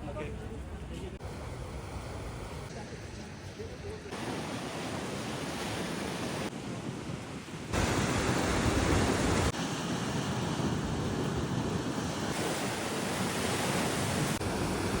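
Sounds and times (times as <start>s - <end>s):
water rushing: 4.1s - 15.0s.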